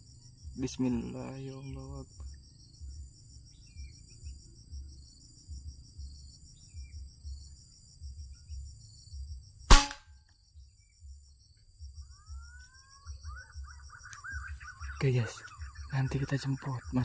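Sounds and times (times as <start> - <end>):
gunshot: 9.7 - 10.1.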